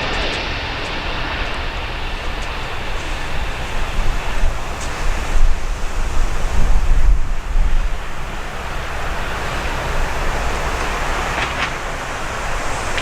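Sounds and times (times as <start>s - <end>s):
jet airliner engines: 0.0s - 13.0s
wind buffeting microphone: 0.0s - 13.0s.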